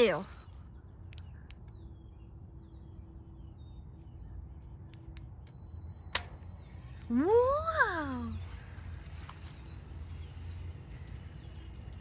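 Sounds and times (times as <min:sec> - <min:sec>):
low outdoor rumble: 0:00.0 - 0:12.0
small birds chirping faintly: 0:00.0 - 0:12.0
sharp click: 0:06.1 - 0:06.5.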